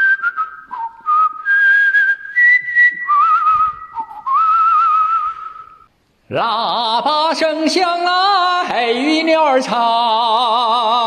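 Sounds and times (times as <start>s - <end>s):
person whistling a melody: 0.0s - 5.9s.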